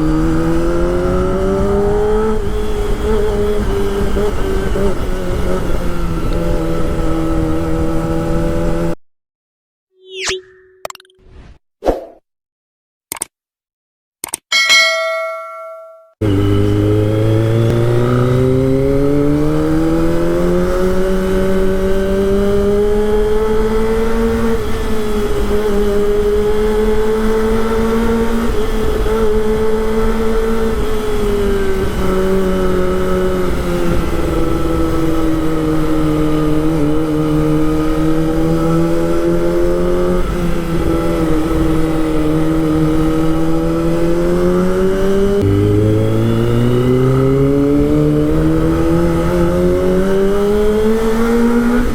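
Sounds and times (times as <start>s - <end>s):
wind and road noise: 0.0s - 9.0s, 16.2s - 51.9s
motorcycle engine running: 45.4s - 49.9s.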